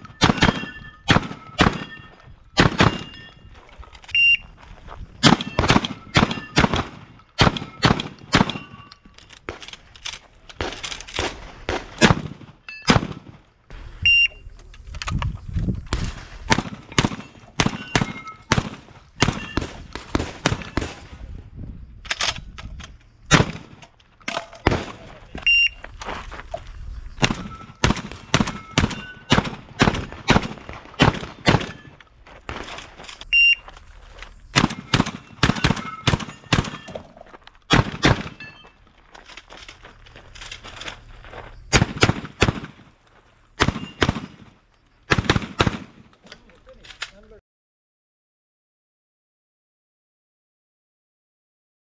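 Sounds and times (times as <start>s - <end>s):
shotgun shots: 0.0s - 3.3s, 5.2s - 8.9s, 10.6s - 13.4s, 15.9s - 21.2s, 23.3s - 25.5s, 27.2s - 32.9s, 34.5s - 37.0s, 37.7s - 38.5s, 41.7s - 42.9s, 43.6s - 46.1s.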